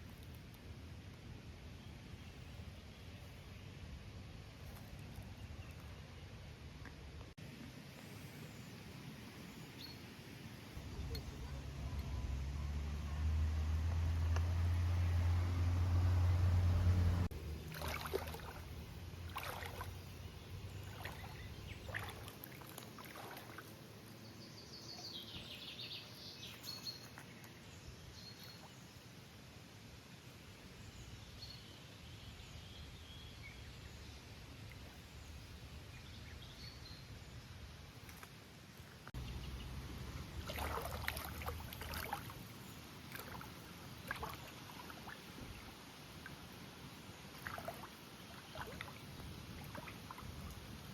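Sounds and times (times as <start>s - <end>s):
low steady hum: 0.0s - 24.6s, 38.7s - 50.9s
rush of flowing water: 10.8s - 24.0s, 39.2s - 50.9s
river water splashing: 10.8s - 24.2s, 37.8s - 50.9s.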